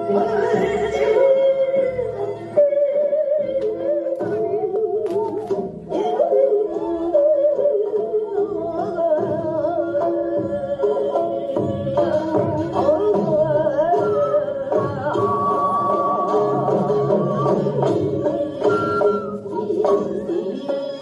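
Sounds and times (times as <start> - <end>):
traditional music with vibrato melody: 0.0 - 21.0.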